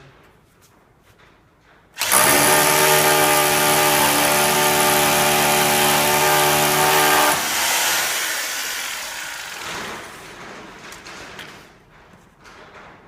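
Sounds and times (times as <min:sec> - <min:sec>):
electric drill drilling into wall: 0:02.0 - 0:10.2.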